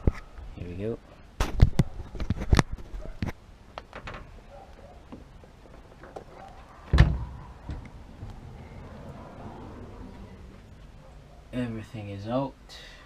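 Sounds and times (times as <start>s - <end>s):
heavy thud: 6.9s - 7.9s.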